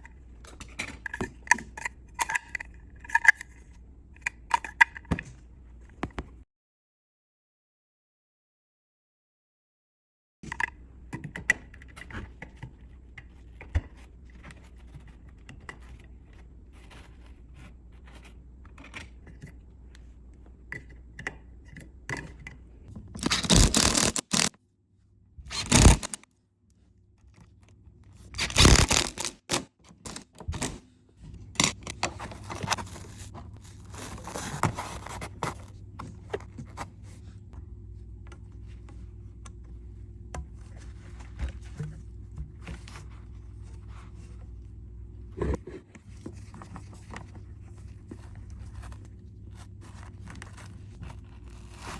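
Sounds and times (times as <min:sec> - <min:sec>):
low steady hum: 0:10.6 - 0:51.9
scraping and handling noises: 0:11.8 - 0:24.5, 0:25.4 - 0:26.3, 0:27.2 - 0:51.9
small clicks: 0:25.5 - 0:26.2.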